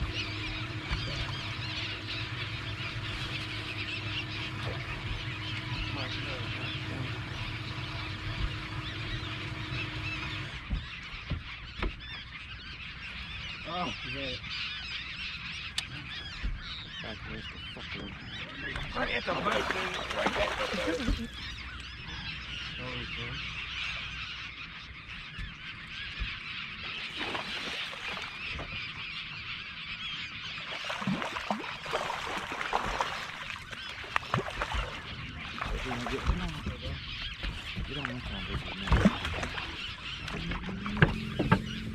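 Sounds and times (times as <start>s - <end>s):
birds chattering calls: 0.0s - 41.9s
low motor hum: 0.0s - 41.9s.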